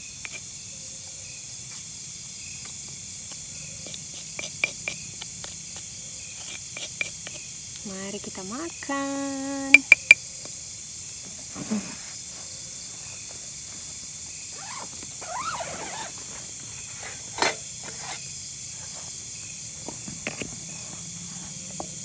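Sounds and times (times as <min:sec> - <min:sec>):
night insects chirping: 0:00.0 - 0:22.0.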